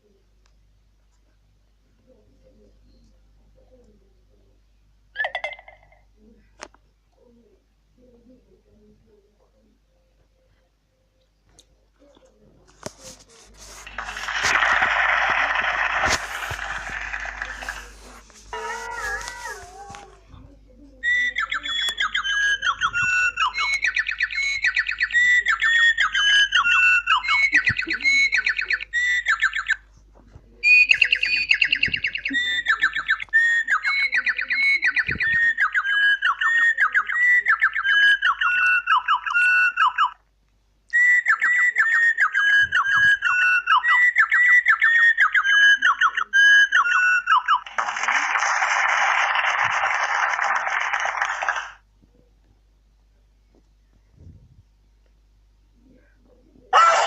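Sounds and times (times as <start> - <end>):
small bird whistling calls: 30.6 - 40.2, 41.0 - 47.6.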